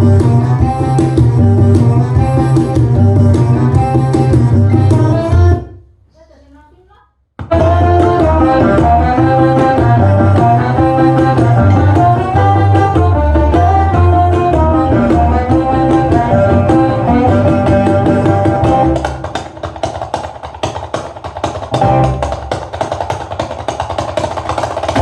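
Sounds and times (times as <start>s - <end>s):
heavy bass music: 0.0s - 5.8s, 7.4s - 19.3s
hand drum percussion: 7.4s - 25.0s.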